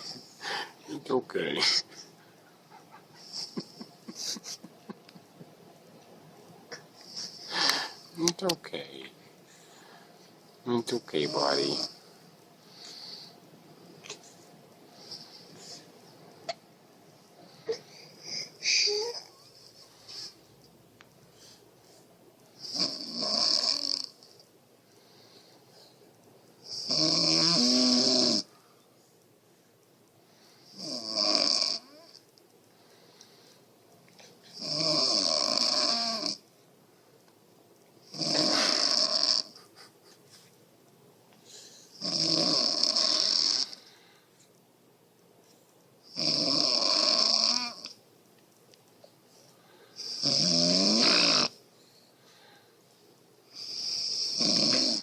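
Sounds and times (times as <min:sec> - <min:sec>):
woman snoring: 0:22.6 - 0:24.2, 0:26.7 - 0:28.5, 0:30.7 - 0:32.1, 0:34.6 - 0:36.4, 0:38.1 - 0:39.6, 0:42.0 - 0:43.8, 0:46.1 - 0:47.9, 0:50.1 - 0:51.6, 0:53.6 - 0:55.0.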